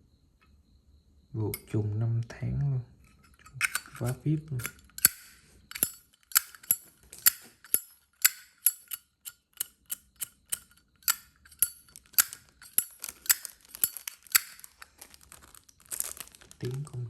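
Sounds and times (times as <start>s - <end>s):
lighter lid clicking open and shut: 3.5s - 14.6s.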